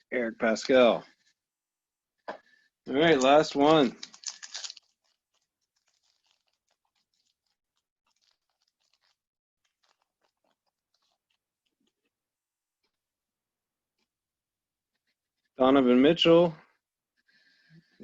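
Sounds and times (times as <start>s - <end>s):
foil wrapper crinkling: 3.1s - 11.4s.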